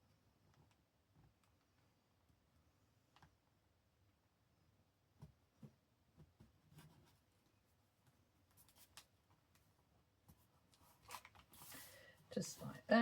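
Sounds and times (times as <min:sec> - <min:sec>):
paper rustling: 0:10.3 - 0:12.8.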